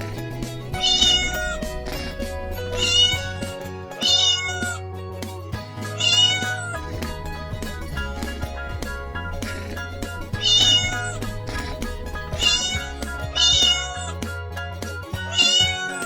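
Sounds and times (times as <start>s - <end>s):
background music: 0.0s - 16.0s
cat meowing: 0.7s - 4.8s, 5.9s - 6.9s, 10.3s - 14.2s, 15.3s - 16.0s.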